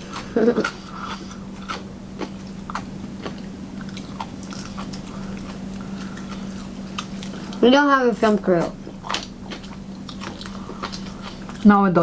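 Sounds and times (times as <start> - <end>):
chewing crunchy food: 0.0 - 11.8
steady low hum: 0.0 - 12.0.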